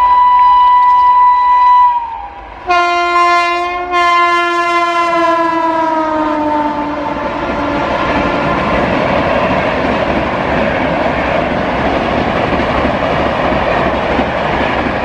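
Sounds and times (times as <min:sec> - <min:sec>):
train horn blast: 0:00.0 - 0:08.4
train rushing past: 0:00.0 - 0:15.0.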